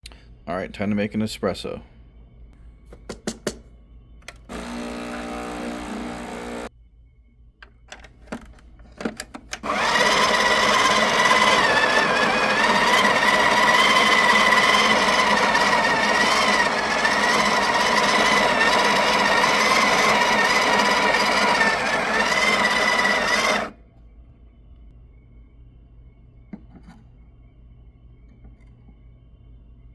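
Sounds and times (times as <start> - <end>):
low machine hum: 3.7 - 7.7
coffee grinder whirring: 4.2 - 6.7, 9.6 - 23.8.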